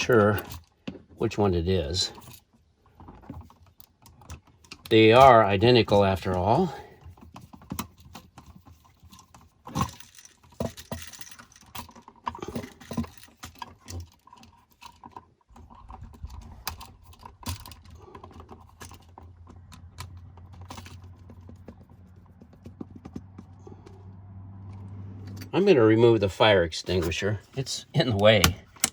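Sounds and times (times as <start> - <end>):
screwdriver clicks and taps: 28.4 - 28.9.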